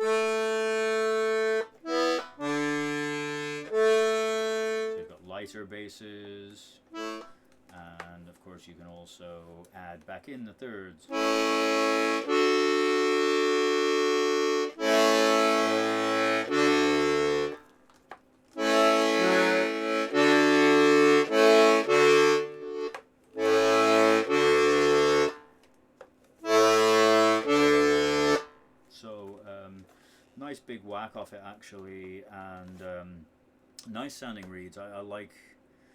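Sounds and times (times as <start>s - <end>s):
button accordion bass and chords: 0.0s - 5.2s, 6.9s - 7.4s, 11.1s - 17.6s, 18.6s - 25.5s, 26.4s - 28.5s.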